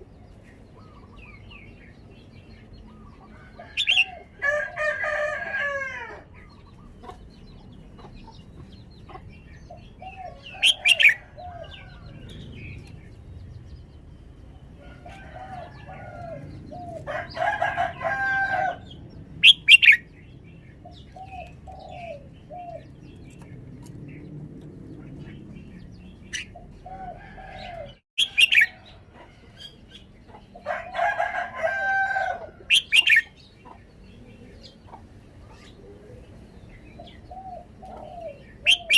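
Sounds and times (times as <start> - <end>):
chickens clucking: 0.0 - 38.9
rooster crowing: 3.3 - 6.3, 10.3 - 12.3, 14.8 - 18.9, 26.9 - 29.5, 30.6 - 33.1.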